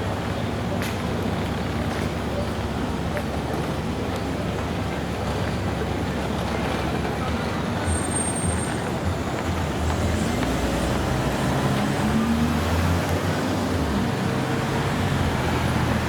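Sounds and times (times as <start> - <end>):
tyres on the road: 0.0 - 16.0
vehicle engines running: 0.0 - 16.0
heavy vehicle pulling away: 6.6 - 16.0.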